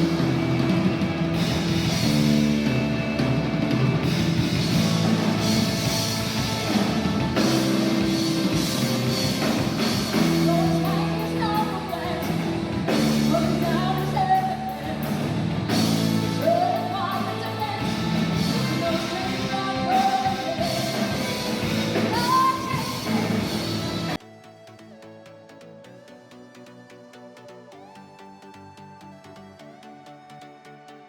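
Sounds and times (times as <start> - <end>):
rock music with singing: 0.0 - 24.2.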